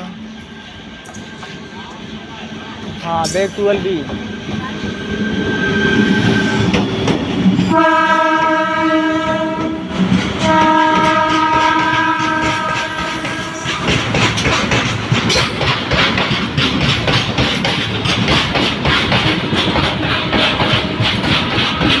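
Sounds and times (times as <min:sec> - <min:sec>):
train wheels clacking over rail joints: 0:06.0 - 0:22.0
locomotive horn: 0:07.7 - 0:13.8.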